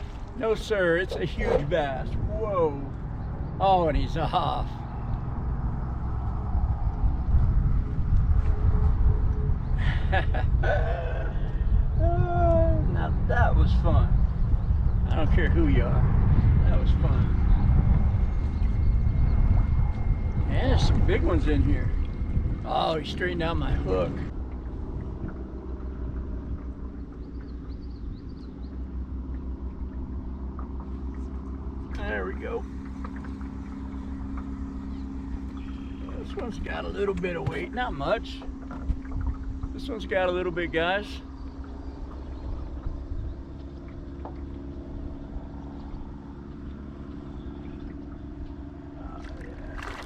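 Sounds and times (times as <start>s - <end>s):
low engine hum: 0.0s - 50.0s
low rumble: 0.0s - 50.0s
faint bird chirps: 32.1s - 37.0s.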